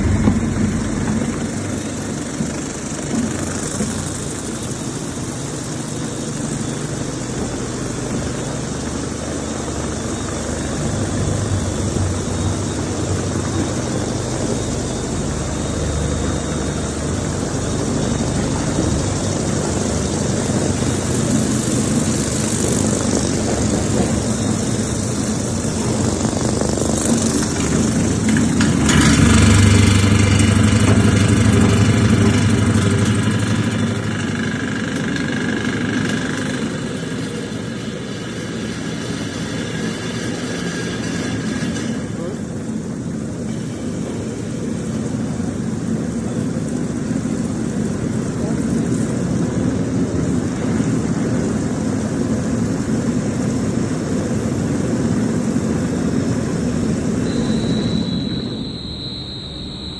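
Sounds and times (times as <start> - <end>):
mixing machinery humming: 0.0 - 38.7, 43.0 - 59.9
high whining tones: 56.1 - 59.9.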